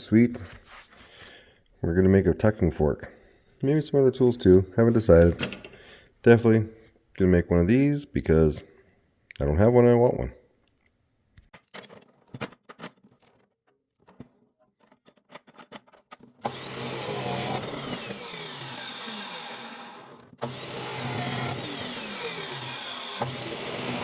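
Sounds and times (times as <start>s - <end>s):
power tool cutting metal: 16.4s - 24.0s.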